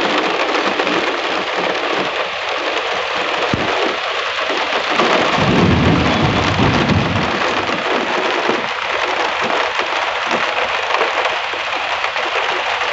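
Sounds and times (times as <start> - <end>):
heavy rain pouring: 0.0 - 12.9
low rumble of thunder: 5.0 - 8.6.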